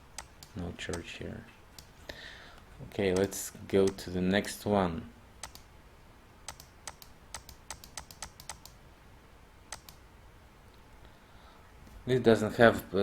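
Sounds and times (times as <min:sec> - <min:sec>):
computer keys clicking: 0:00.0 - 0:01.1, 0:03.1 - 0:04.6, 0:05.4 - 0:05.7, 0:06.5 - 0:08.8, 0:09.7 - 0:10.0.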